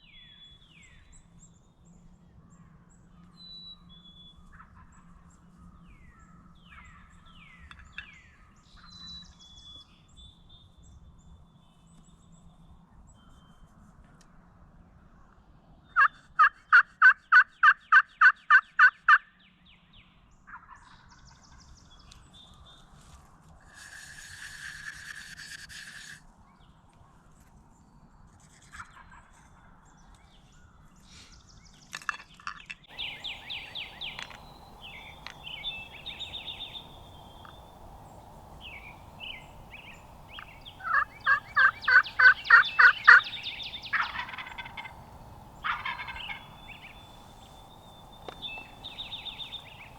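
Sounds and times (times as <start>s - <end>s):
short raspy turkey call: 32.9s - 49.9s
turkey yelping: 32.9s - 49.9s.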